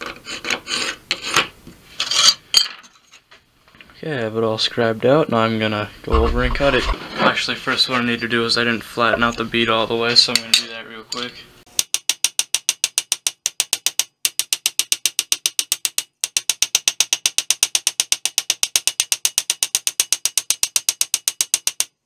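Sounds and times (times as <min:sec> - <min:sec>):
hammer tapping sheet metal: 0:11.7 - 0:22.0.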